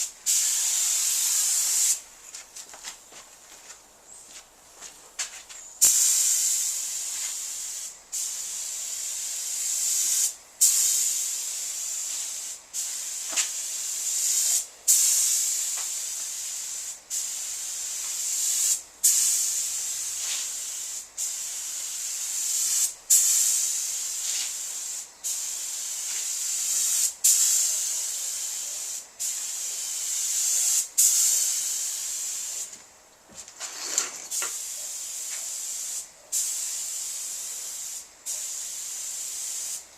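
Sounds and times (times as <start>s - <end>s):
paint spray gun hissing: 0.0s - 2.0s, 5.8s - 32.8s, 33.7s - 39.9s.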